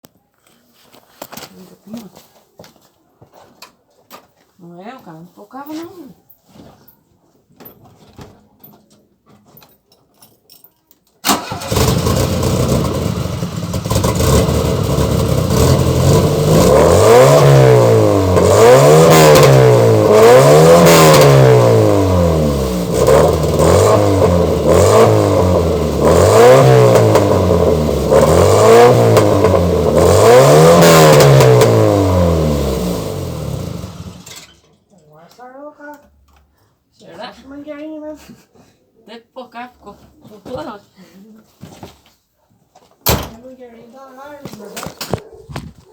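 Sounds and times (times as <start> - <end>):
car engine starting and revving: 11.2 - 34.6.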